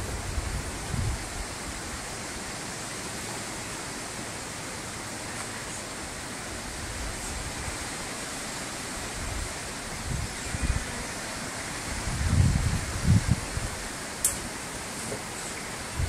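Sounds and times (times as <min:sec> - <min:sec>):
outdoor hiss: 0:00.0 - 0:16.0.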